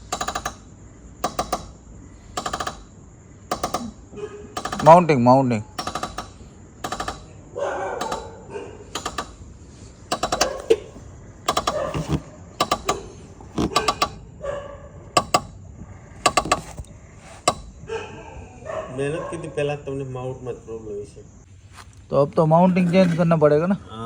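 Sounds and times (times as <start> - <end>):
strut mount knocking clicks: 0.0 - 7.4, 8.0 - 14.3, 15.0 - 17.9
suspension creaking: 0.0 - 18.7.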